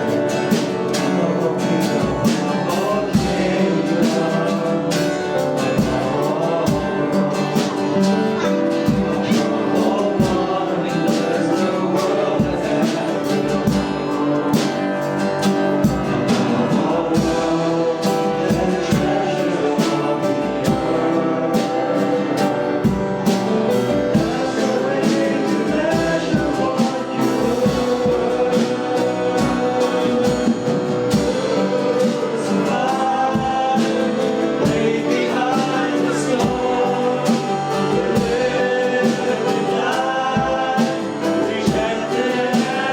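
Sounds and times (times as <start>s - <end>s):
band playing steady beat: 0.0s - 42.9s
voices singing together: 0.0s - 42.9s.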